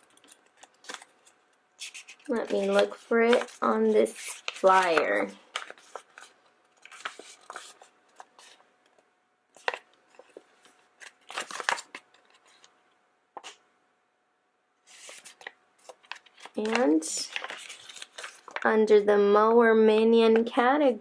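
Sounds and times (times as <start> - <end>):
paper rustling and tapping: 0.0 - 9.0, 9.6 - 12.7, 15.0 - 18.6.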